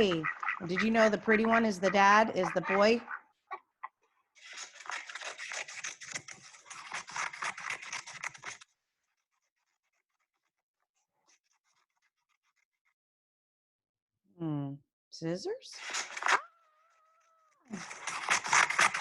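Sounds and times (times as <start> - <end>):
scissors cutting paper: 4.4 - 12.9, 15.8 - 16.4, 17.7 - 19.0.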